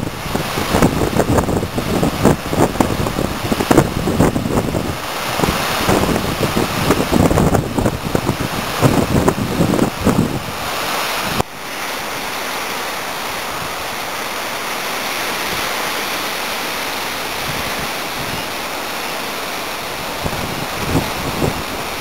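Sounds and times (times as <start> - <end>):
wind buffeting microphone: 0.0 - 11.4, 17.2 - 18.8, 19.4 - 22.0
breaking waves: 0.0 - 22.0.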